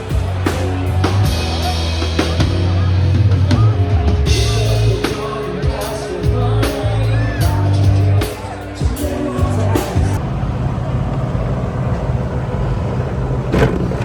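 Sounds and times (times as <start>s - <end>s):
drum kit beating: 0.0s - 10.2s
loud rock music: 0.0s - 10.2s
heavy bass: 0.0s - 14.0s.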